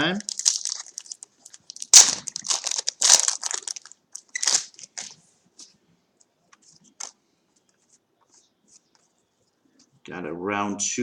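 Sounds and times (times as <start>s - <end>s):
card packaging crinkling: 0.0s - 5.2s.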